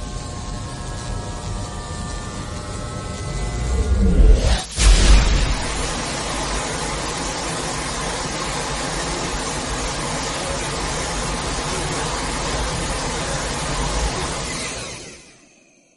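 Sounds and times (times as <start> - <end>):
deep low rumble: 3.2 - 6.0
steady rushing rumble: 3.4 - 8.0.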